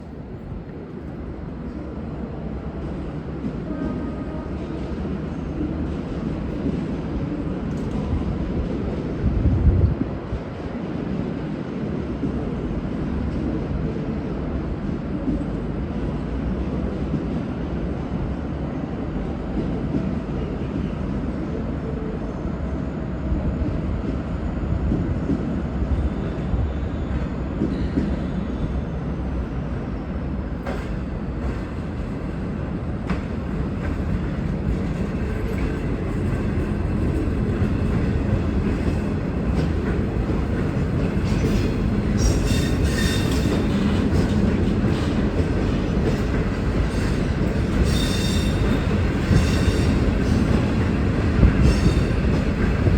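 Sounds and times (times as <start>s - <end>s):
rail clatter: 30.6s - 52.9s.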